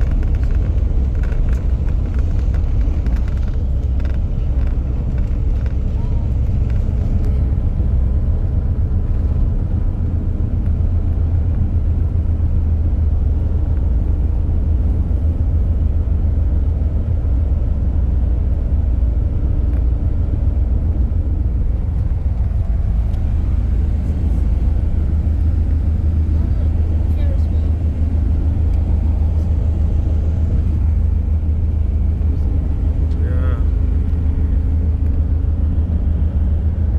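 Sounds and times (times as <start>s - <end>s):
road vehicle engine and road noise: 0.0s - 36.9s.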